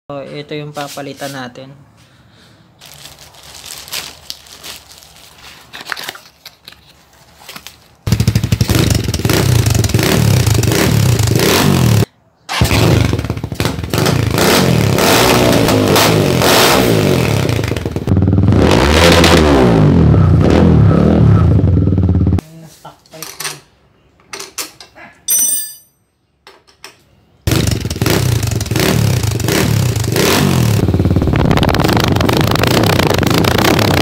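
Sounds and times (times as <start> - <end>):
motorcycle engine revving: 8.1 - 22.4, 27.5 - 34.0.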